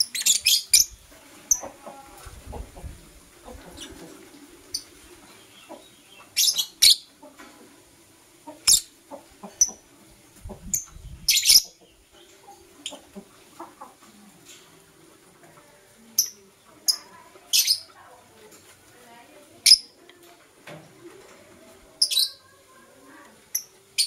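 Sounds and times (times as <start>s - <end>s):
lovebirds chirping shrilly: 10.7s - 11.8s.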